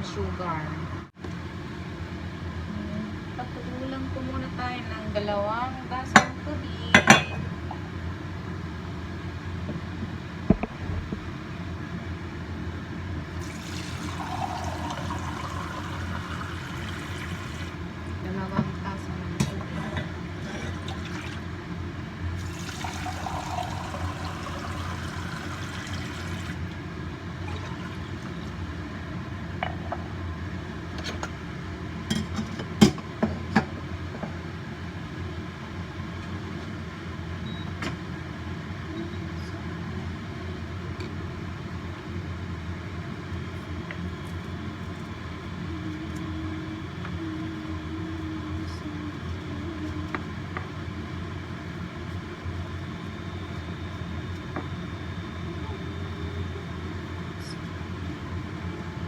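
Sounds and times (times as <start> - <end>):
water heating in pot hum: 0.0 - 59.0
pouring water hiss: 13.4 - 17.8, 22.4 - 26.7.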